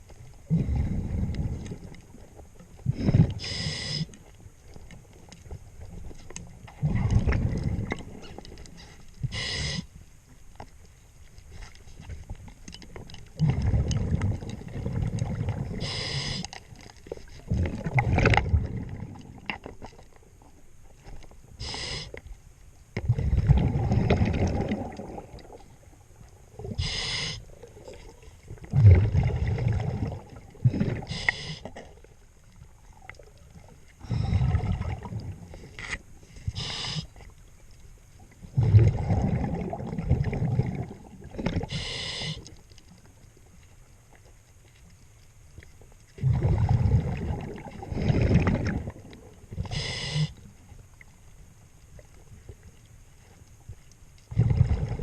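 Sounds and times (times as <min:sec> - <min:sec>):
regulator inhalation hiss: 0:03.4 - 0:04.1, 0:09.3 - 0:09.9, 0:15.8 - 0:16.5, 0:21.6 - 0:22.2, 0:26.8 - 0:27.5, 0:31.1 - 0:31.7, 0:36.5 - 0:37.1, 0:41.7 - 0:42.4, 0:49.6 - 0:50.4
exhaled bubbles burbling: 0:06.6 - 0:08.4, 0:13.0 - 0:16.2, 0:17.4 - 0:19.7, 0:23.0 - 0:25.9, 0:26.5 - 0:31.2, 0:32.8 - 0:35.7, 0:38.4 - 0:41.8, 0:46.2 - 0:49.9, 0:54.3 - 0:55.0.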